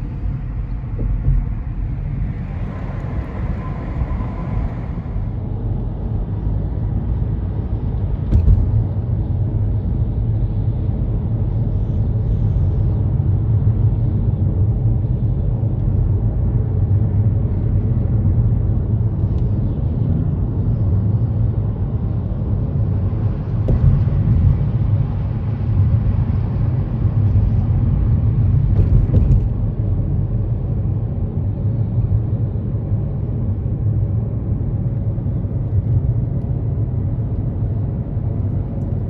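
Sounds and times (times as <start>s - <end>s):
car driving low rumble: 0.0s - 39.0s.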